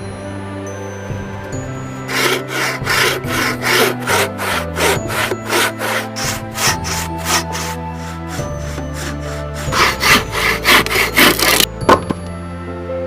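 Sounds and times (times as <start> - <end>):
soft background music: 0.0 - 13.0
hand saw cutting wood: 2.0 - 11.7.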